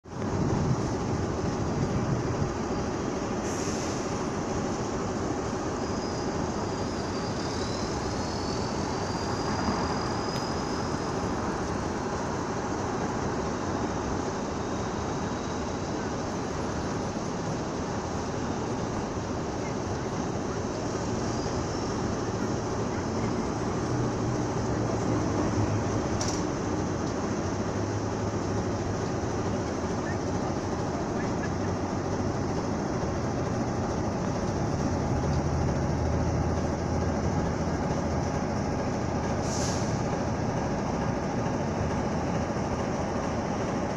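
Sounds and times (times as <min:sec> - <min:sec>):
train rumbling on tracks: 0:00.0 - 0:43.9
brief hiss: 0:03.4 - 0:04.3, 0:39.4 - 0:40.1
faint high squeal: 0:05.6 - 0:11.8, 0:21.0 - 0:22.3.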